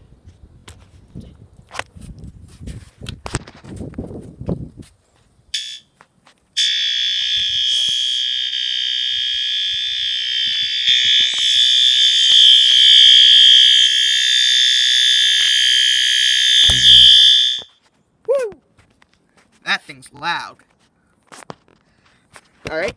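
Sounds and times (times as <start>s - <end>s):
alarm horn tone: 5.6s - 5.9s, 6.6s - 17.7s
short blip: 16.6s - 17.7s.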